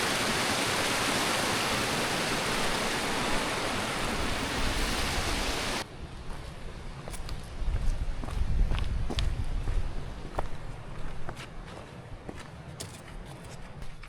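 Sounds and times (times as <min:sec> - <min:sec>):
fast-flowing water rushing: 0:00.0 - 0:05.8.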